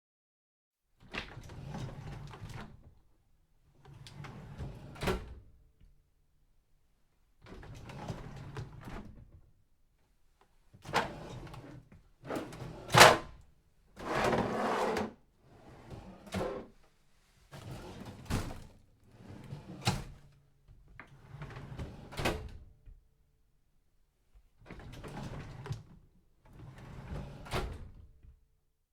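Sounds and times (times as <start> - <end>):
drawer rolling open and shut: 10.8 - 13.3, 14.0 - 16.8, 17.6 - 20.2
drawer knocking closed: 14.0 - 15.1, 16.4 - 16.7.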